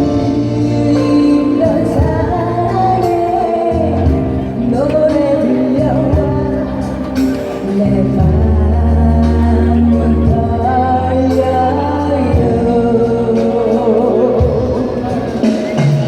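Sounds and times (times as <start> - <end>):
person singing: 0.0 - 16.0
pop music over loudspeakers: 0.0 - 16.0.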